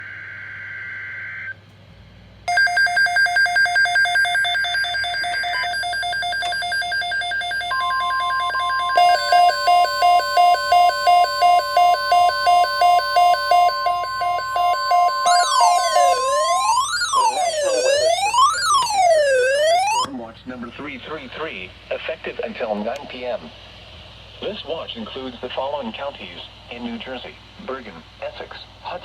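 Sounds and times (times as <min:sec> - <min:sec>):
rapid electronic alarm beeping: 0:02.5 - 0:20.1
steady attention tone: 0:02.5 - 0:20.1
warbling digital data burst: 0:07.8 - 0:20.1.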